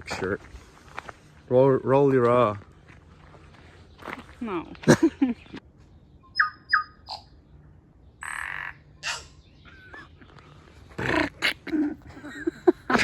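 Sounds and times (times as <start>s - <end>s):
bird calling: 6.2s - 7.5s, 8.2s - 13.0s.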